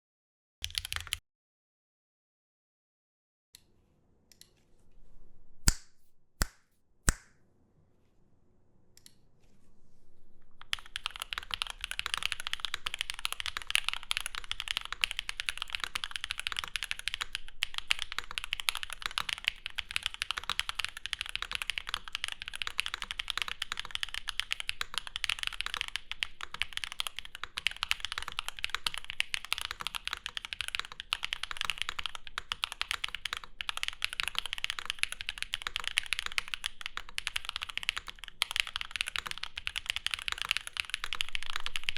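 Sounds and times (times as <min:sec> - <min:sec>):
mechanical keyboard typing: 0:00.6 - 0:01.2, 0:10.6 - 0:41.9.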